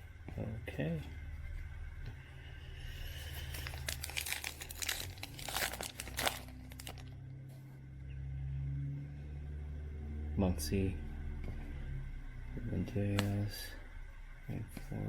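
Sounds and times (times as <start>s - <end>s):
low steady hum: 0.0s - 15.0s
foil wrapper crinkling and tearing: 3.0s - 7.2s.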